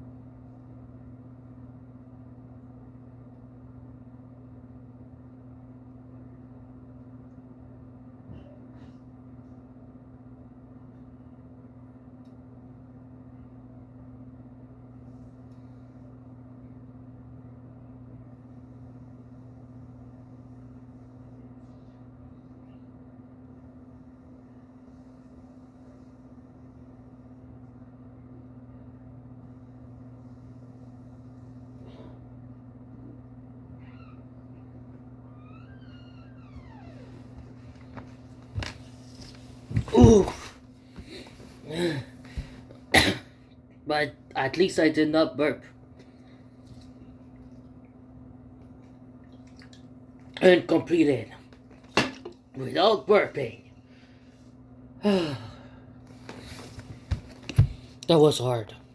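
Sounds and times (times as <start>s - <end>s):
steady low hum: 0.0s - 58.9s.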